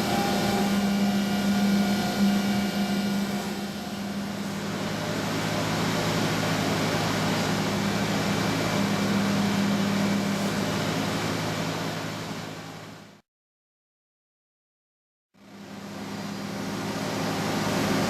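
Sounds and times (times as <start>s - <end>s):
milling machine whirring: 0.0s - 13.1s, 15.5s - 18.0s
low machine hum: 0.0s - 13.2s.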